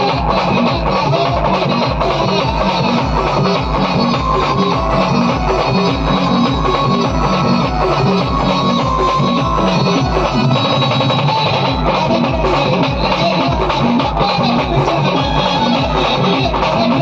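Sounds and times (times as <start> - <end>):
steady drum beat: 0.0 - 17.0.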